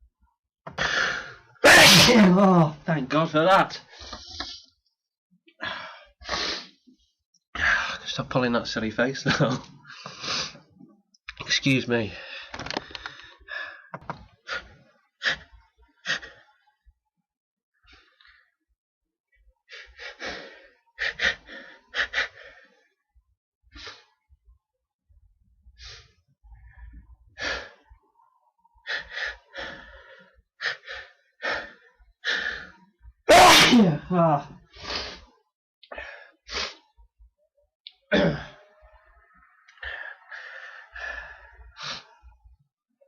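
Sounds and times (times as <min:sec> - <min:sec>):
person sneezing: 0:01.6 - 0:02.6, 0:33.3 - 0:34.4, 0:38.1 - 0:38.5.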